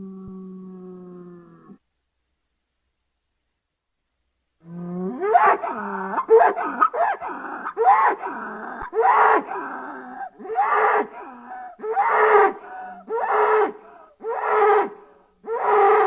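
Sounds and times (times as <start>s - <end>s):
dinosaur calls: 5.1s - 16.0s.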